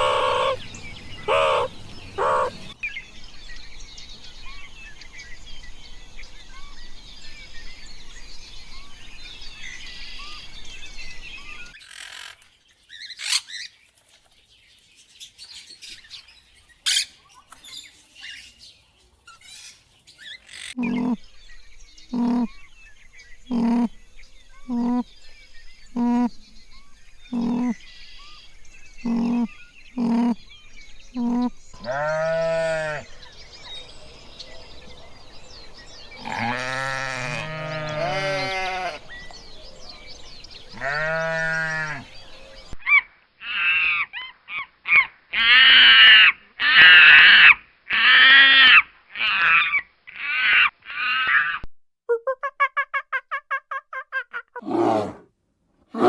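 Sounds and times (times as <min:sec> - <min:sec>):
long wavering bleats: 0:00.0 - 0:00.6, 0:01.2 - 0:02.7, 0:23.5 - 0:23.9, 0:27.3 - 0:27.8, 0:29.1 - 0:30.4, 0:31.2 - 0:33.1, 0:36.2 - 0:39.0, 0:40.8 - 0:42.1, 0:54.6 - 0:55.2
high-pitched animal calls: 0:00.0 - 0:02.8, 0:20.5 - 0:21.2, 0:22.1 - 0:22.5, 0:23.5 - 0:23.9, 0:24.7 - 0:25.1, 0:26.0 - 0:26.4, 0:27.3 - 0:27.8, 0:29.0 - 0:30.4, 0:31.2 - 0:33.0, 0:54.6 - 0:55.2
short animal calls: 0:00.0 - 0:02.8, 0:22.2 - 0:22.5, 0:23.5 - 0:23.9, 0:24.7 - 0:25.1, 0:27.3 - 0:27.8, 0:29.0 - 0:30.4, 0:31.2 - 0:33.0, 0:54.6 - 0:55.3.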